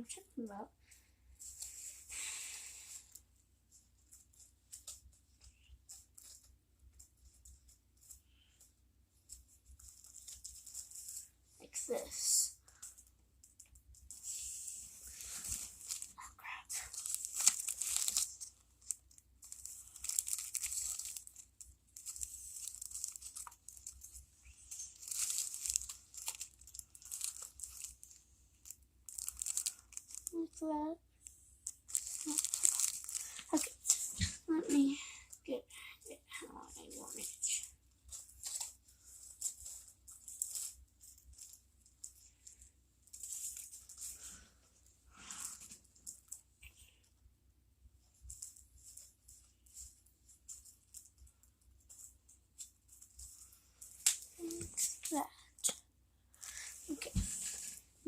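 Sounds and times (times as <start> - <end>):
bag and paper crinkling: 15.0 - 30.7, 31.7 - 35.0.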